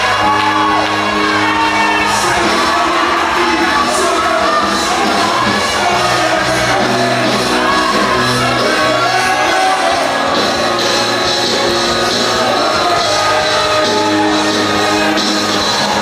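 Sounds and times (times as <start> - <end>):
steady bass notes: 0.0 - 16.0
voices singing over a band: 0.0 - 16.0.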